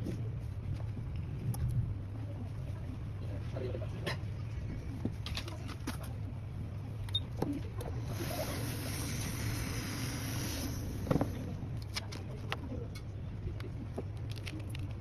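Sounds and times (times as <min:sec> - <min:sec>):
steady low hum: 0:00.0 - 0:15.0
hiss: 0:08.0 - 0:11.4.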